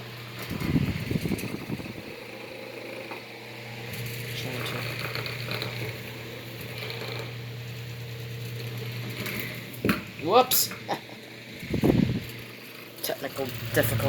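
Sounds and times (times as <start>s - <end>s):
electric fan humming: 0.0s - 14.0s
fan rattling: 0.3s - 3.1s, 3.8s - 14.0s.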